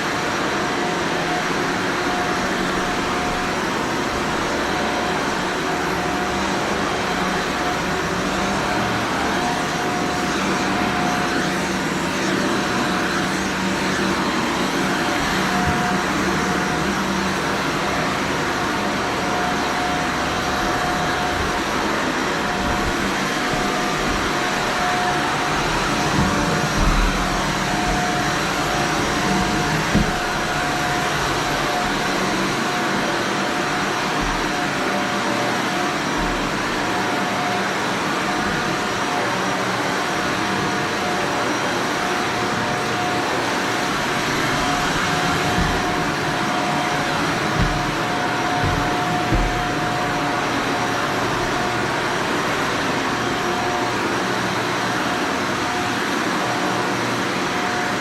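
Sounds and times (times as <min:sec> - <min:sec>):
vacuum cleaner on carpet: 0:00.0 - 0:58.0
low bumps: 0:20.6 - 0:30.6, 0:43.8 - 0:51.6.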